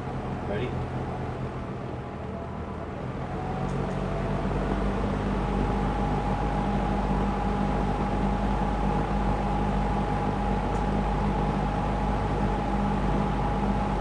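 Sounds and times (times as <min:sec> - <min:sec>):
box fan running: 0:04.5 - 0:14.0.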